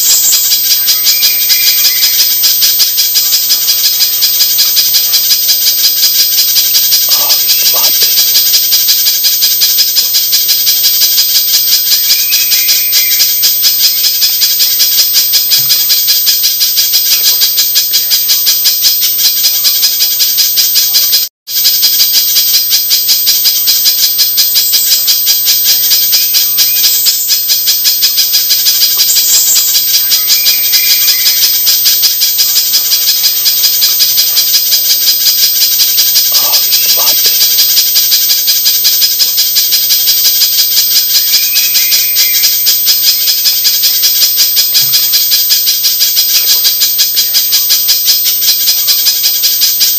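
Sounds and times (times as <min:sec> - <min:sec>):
bird call of sharp high chips: 0:00.0 - 0:02.6, 0:06.2 - 0:08.4, 0:12.0 - 0:13.6, 0:28.4 - 0:37.6, 0:41.2 - 0:43.2.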